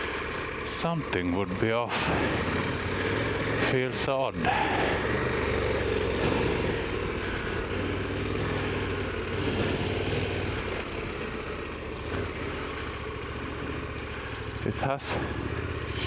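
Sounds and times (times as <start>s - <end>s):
motorcycle engine running: 0.0s - 16.0s
road and wind noise: 0.0s - 16.0s
person talking: 0.6s - 2.8s, 3.5s - 5.1s, 14.6s - 16.0s.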